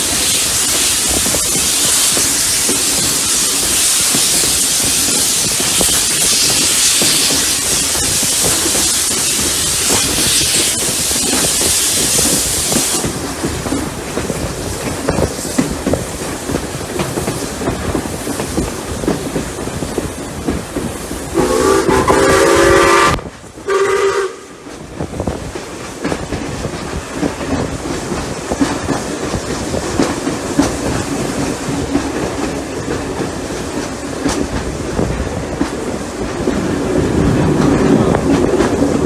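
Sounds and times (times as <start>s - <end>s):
train rail clatter: 0.0s - 39.0s
steam locomotive whistle: 21.3s - 24.6s.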